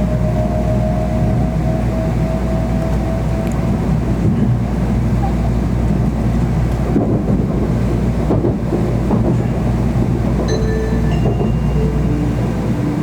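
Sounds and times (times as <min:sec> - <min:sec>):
train rumbling: 0:00.0 - 0:13.0
electronic chime melody: 0:10.5 - 0:13.0.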